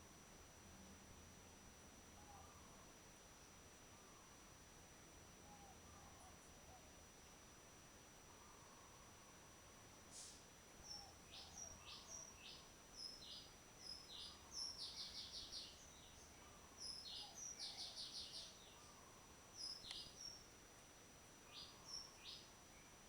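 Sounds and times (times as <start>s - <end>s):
birds chirping faintly: 10.8s - 23.0s.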